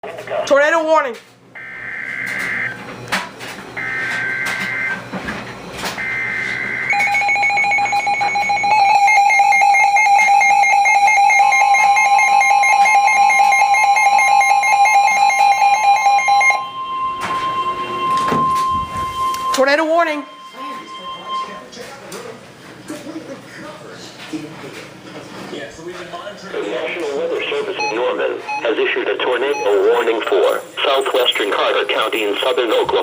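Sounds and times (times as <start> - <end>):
harsh dual-tone alert signal: 1.6 - 2.9, 3.8 - 21.8, 26.7 - 33.0
second steady tone: 16.4 - 21.7
warbling data bursts: 27.7 - 33.0.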